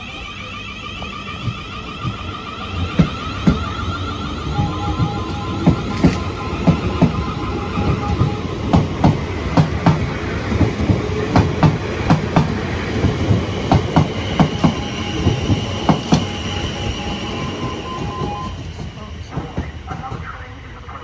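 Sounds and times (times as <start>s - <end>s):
two-note crossing alarm: 0.0s - 9.0s
electric train passing: 0.0s - 21.0s
train wheels clattering over rail joints: 1.0s - 20.3s.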